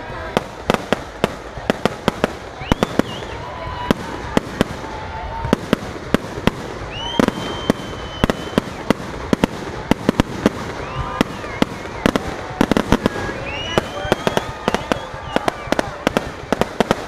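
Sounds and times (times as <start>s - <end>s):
fireworks bangs: 0.0s - 17.0s
fireworks whistling: 0.0s - 17.0s.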